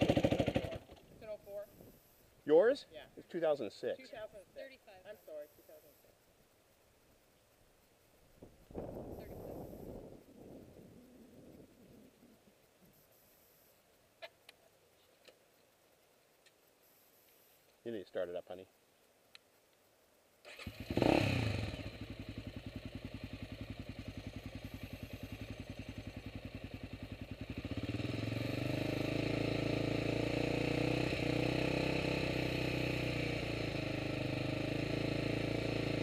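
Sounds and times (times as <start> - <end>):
off-road motorcycle engine: 0.0 - 4.2, 20.4 - 36.0.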